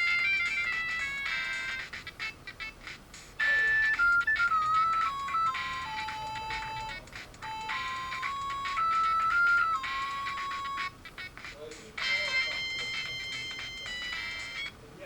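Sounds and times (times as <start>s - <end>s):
phone ringtone electronic melody: 0.0s - 14.8s.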